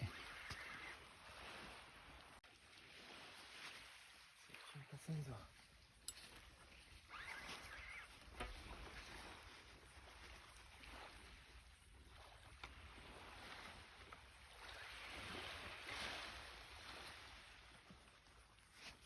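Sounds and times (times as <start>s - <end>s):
waves washing on shore: 8.6s - 19.0s.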